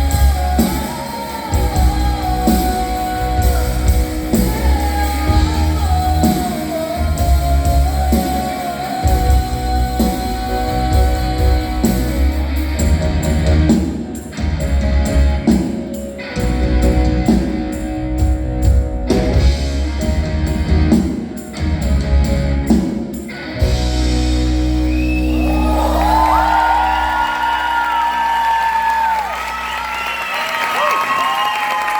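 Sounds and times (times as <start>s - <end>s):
woman singing: 0.0s - 12.6s
live rock band playing: 0.0s - 31.9s.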